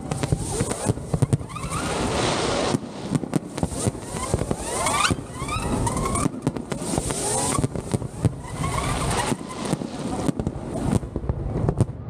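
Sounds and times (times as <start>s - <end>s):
firework bangs: 0.0s - 12.0s
fireworks crackling: 0.0s - 12.0s
whistling fireworks rising: 0.0s - 12.0s.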